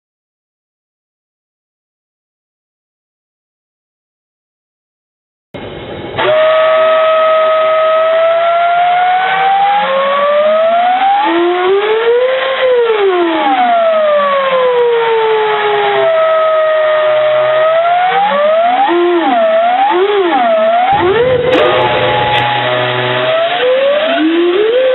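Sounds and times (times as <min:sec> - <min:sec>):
steam whistle gliding in pitch: 0:06.2 - 0:24.9.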